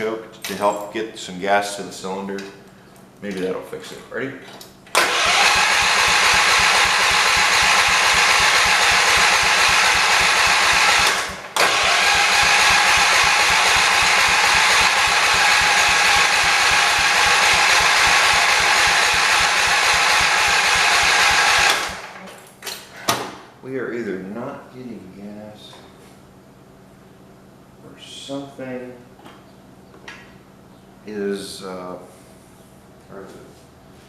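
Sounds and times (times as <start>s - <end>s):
engine cranking without starting: 5.0s - 22.2s.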